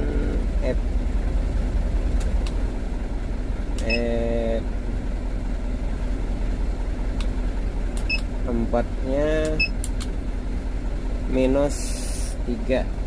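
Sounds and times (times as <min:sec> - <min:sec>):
truck engine rumble: 0:00.0 - 0:13.0
short electronic beep: 0:03.8 - 0:04.1.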